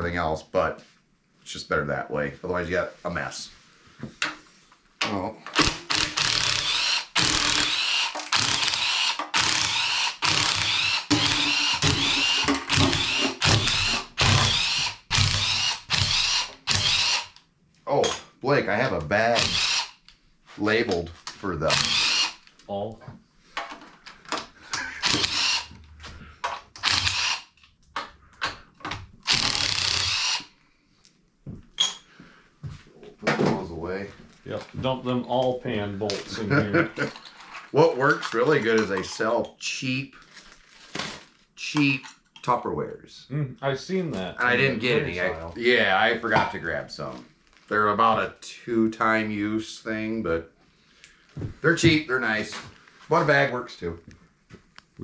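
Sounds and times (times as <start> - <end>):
power tool motor whine: 5.6 - 17.3, 19.5 - 19.9, 21.8 - 22.4, 25.0 - 25.8, 26.8 - 27.5, 29.3 - 30.5.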